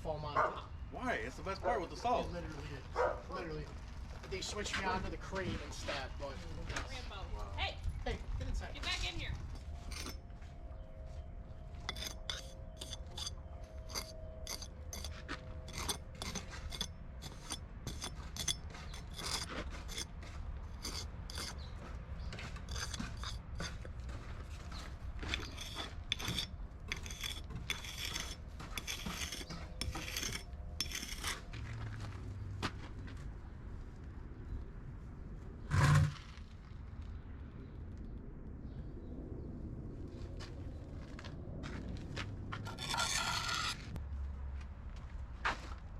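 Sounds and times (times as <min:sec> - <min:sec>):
hand tool scraping brickwork: 0:09.5 - 0:10.2, 0:11.8 - 0:21.7, 0:22.4 - 0:24.0, 0:25.2 - 0:31.6, 0:35.7 - 0:36.2, 0:42.7 - 0:44.0.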